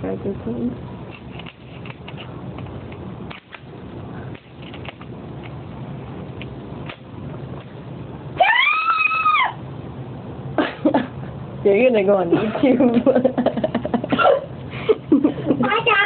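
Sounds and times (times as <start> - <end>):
steady low hum: 0.0 - 16.0
high-pitched vocal squeal: 8.4 - 9.6.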